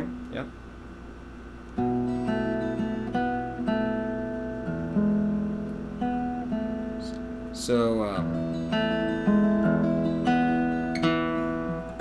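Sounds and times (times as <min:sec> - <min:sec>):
fingerpicked acoustic guitar: 0:01.4 - 0:12.0.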